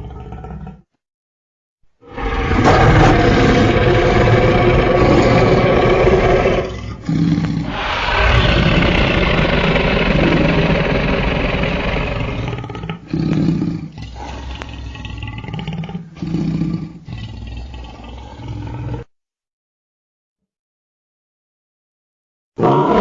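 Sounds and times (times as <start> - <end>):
rough growling roars: 2.0 - 19.1, 22.6 - 23.0.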